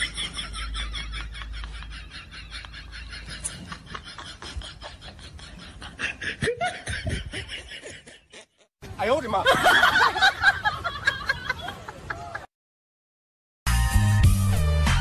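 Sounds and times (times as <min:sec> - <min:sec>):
snickering laughter: 0:00.0 - 0:08.7.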